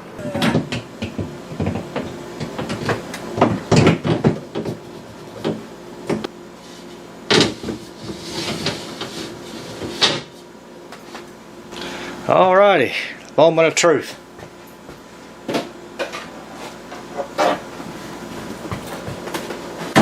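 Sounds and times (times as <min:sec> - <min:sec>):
plastic shelf knocking and clattering: 0:00.4 - 0:04.8.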